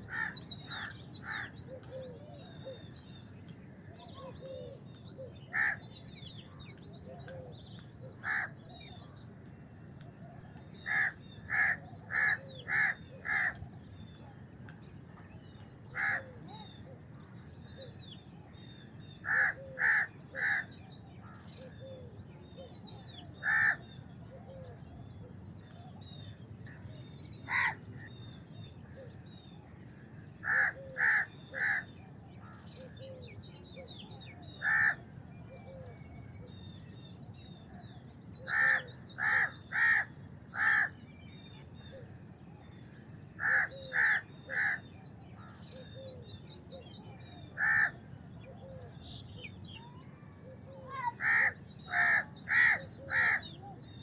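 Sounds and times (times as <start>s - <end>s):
small birds chirping: 0.0s - 23.8s, 30.3s - 54.0s
crows cawing: 0.1s - 1.6s, 5.5s - 5.9s, 8.2s - 8.6s, 10.8s - 13.6s, 15.9s - 16.3s, 19.2s - 20.8s, 23.4s - 23.8s, 27.5s - 27.8s, 30.4s - 32.0s, 34.6s - 35.0s, 38.4s - 41.0s, 43.4s - 44.9s, 47.6s - 48.0s, 50.9s - 53.5s.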